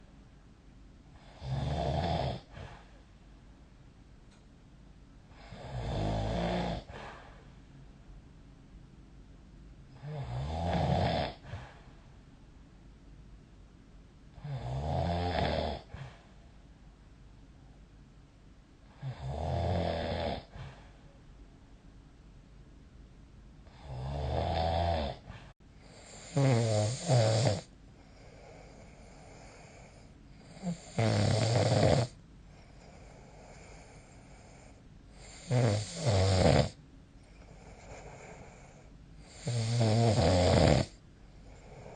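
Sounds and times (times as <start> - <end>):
person snoring: 1.2 - 2.8, 5.3 - 7.2, 10.0 - 11.7, 14.4 - 16.2, 19.0 - 20.6, 23.7 - 25.3, 25.9 - 32.2, 32.9 - 36.8, 37.5 - 41.9.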